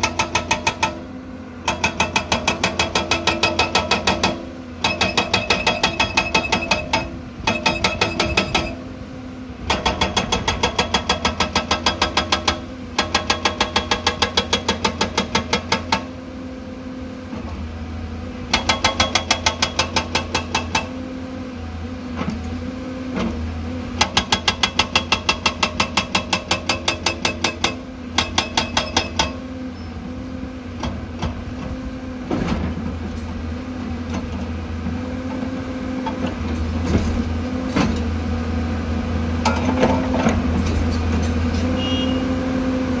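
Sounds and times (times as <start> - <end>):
hydraulic breaker hammering rock: 0.0 - 9.0, 9.6 - 16.2, 18.5 - 21.0, 23.2 - 29.5.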